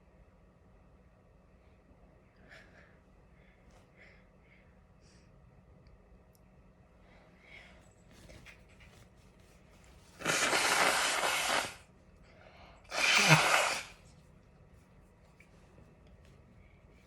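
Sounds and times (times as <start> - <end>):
person sneezing: 10.2 - 11.8, 12.9 - 14.0.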